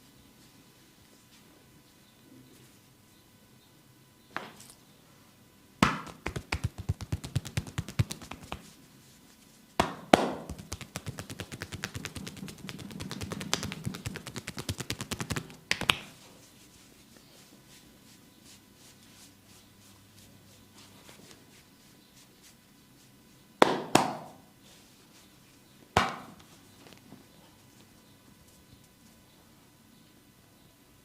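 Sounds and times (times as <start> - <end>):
hand slap: 5.8 - 8.7, 9.8 - 16.1, 23.6 - 24.4, 26.0 - 26.3
hands striking body rapidly: 5.8 - 8.7, 9.8 - 16.1, 23.6 - 24.4.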